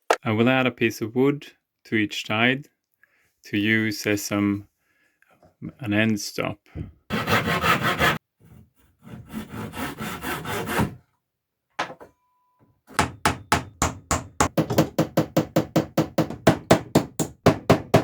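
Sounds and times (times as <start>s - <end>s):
handsaw cutting wood: 7.1s - 8.2s, 9.0s - 11.0s.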